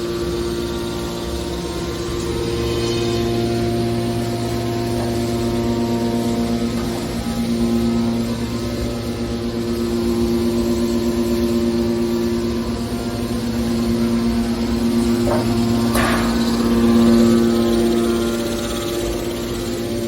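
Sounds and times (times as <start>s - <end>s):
hydraulic baler motor humming: 0.0s - 20.0s
machine clatter: 13.6s - 19.2s.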